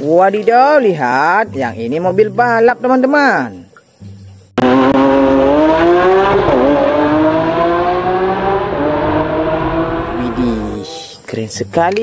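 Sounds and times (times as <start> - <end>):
race car engine accelerating: 4.6 - 10.9.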